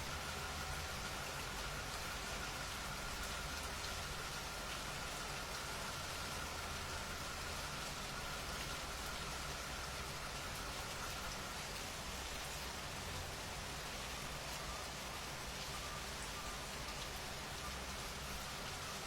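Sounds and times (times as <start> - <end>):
steady rain pattering: 0.0 - 19.0
faint steady high tone: 14.0 - 19.0.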